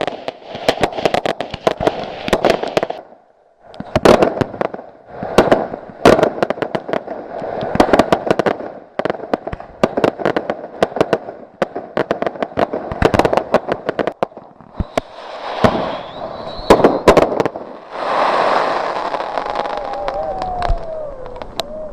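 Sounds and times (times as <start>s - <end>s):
fireworks crackling: 0.0s - 21.9s
steady hiss: 14.1s - 21.9s.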